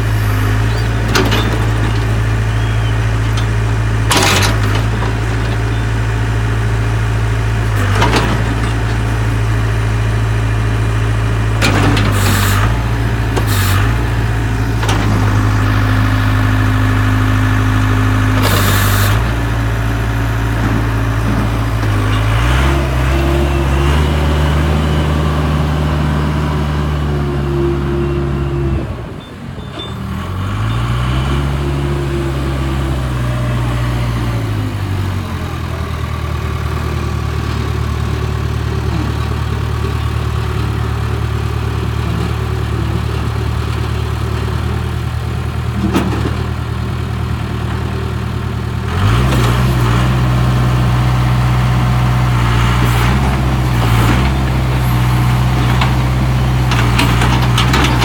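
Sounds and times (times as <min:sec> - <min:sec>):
diesel engine revving and idling: 0:00.0 - 0:58.0.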